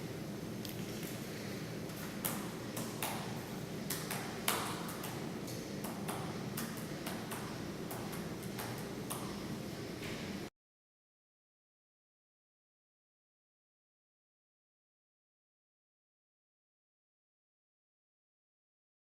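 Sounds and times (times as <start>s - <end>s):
steady low hum: 0.0s - 10.5s.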